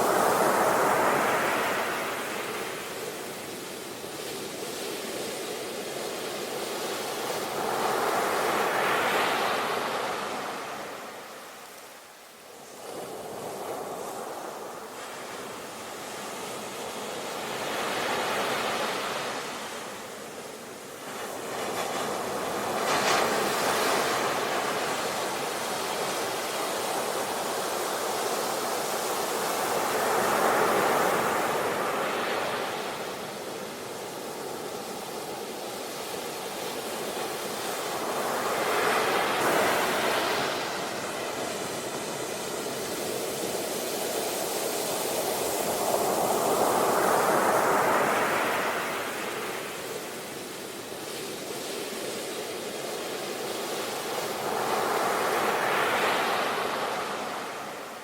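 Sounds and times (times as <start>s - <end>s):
sea waves breaking on shore: 0.0s - 58.0s.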